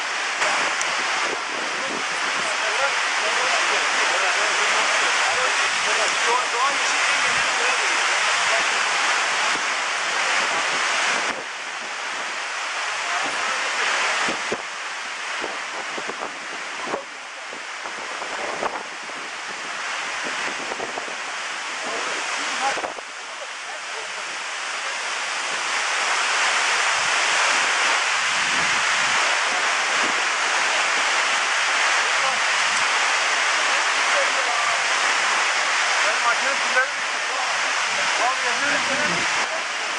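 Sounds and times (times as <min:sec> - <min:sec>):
waterfall roaring: 0:00.0 - 0:39.9
wind buffeting microphone: 0:00.4 - 0:02.6, 0:10.3 - 0:12.5, 0:14.2 - 0:23.2, 0:25.3 - 0:31.5, 0:38.7 - 0:39.9.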